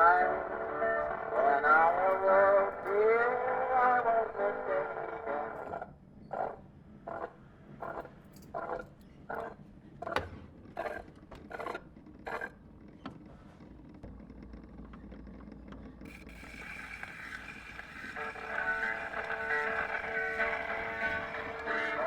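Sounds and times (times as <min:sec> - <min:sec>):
low hum: 0:11.8 - 0:22.0
gramophone scraping strokes: 0:16.1 - 0:22.0.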